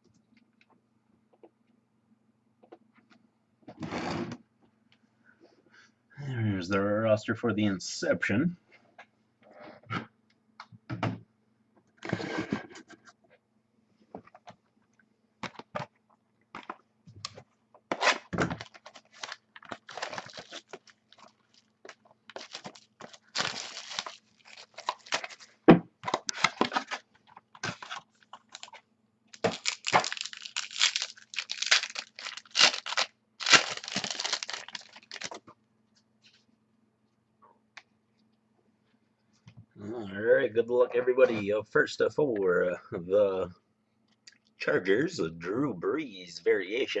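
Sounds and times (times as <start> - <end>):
plastic wrap tearing and crinkling: 17.9 - 27.0, 27.6 - 35.4.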